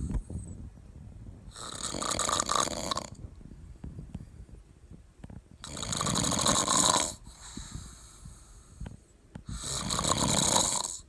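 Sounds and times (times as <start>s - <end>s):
quiet breathing: 0.0s - 0.6s, 7.1s - 10.2s
man snoring loudly: 1.5s - 3.2s, 5.6s - 7.2s, 9.5s - 11.0s.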